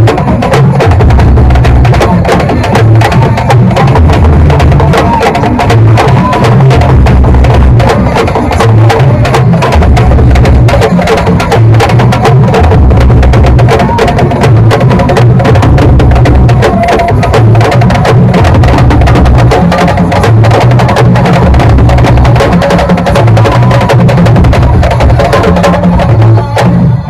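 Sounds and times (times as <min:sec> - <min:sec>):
percussion-heavy music: 0:00.0 - 0:27.0.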